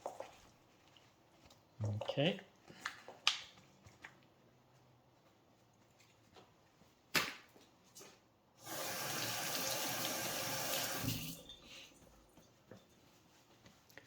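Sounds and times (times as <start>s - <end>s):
kitchen tap running: 8.6s - 11.7s.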